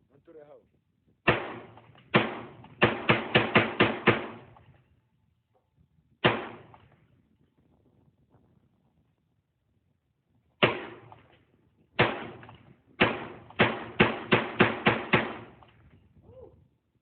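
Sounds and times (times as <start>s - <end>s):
rifle shots: 1.3s - 4.7s, 6.2s - 7.0s, 10.6s - 11.3s, 12.0s - 15.8s.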